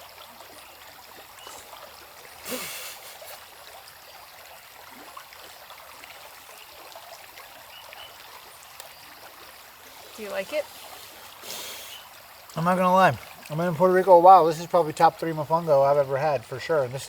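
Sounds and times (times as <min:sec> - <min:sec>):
stream rushing and trickling: 0:00.0 - 0:17.0
faint chirps: 0:11.5 - 0:12.2.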